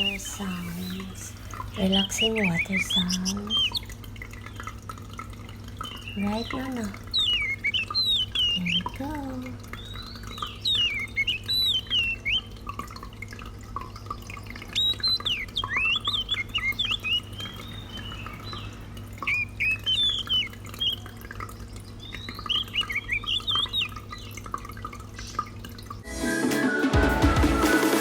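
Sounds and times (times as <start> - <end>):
birds chirping: 0.0 - 26.0
small pump humming: 0.0 - 26.1
water fountain trickling: 0.0 - 26.2.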